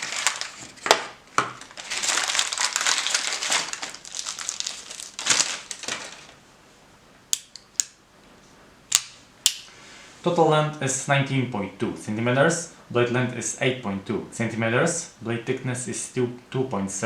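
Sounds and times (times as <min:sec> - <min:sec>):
packaging crinkling and rustling: 0:00.0 - 0:06.4
sharp clicks: 0:08.9 - 0:09.7.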